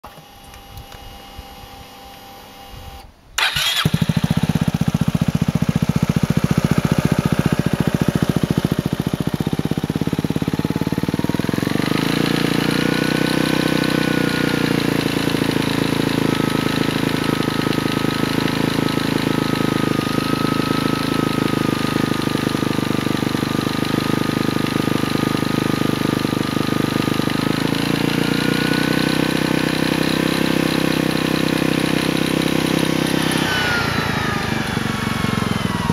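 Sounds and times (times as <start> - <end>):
scooter engine starting and idling: 0.0 - 35.9.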